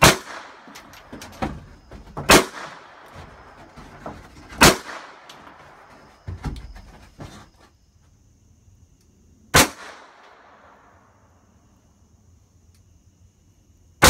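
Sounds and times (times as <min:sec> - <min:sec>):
loud gunshots with echo: 0:00.0 - 0:00.7, 0:02.3 - 0:03.0
distant gunshots: 0:00.0 - 0:00.8, 0:02.3 - 0:03.5, 0:04.6 - 0:05.9.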